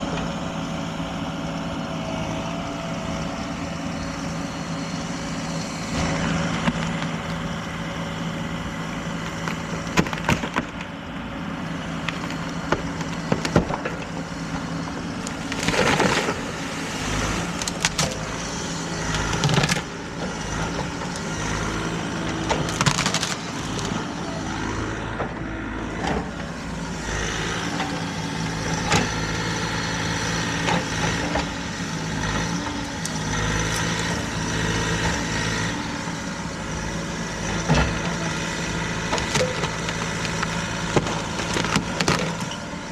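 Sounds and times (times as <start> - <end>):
diesel engine running: 0.0 - 42.9
tree cracking and splintering: 9.2 - 10.9, 11.8 - 25.2, 26.0 - 35.7, 36.8 - 42.6
tree crashing: 12.0 - 25.1.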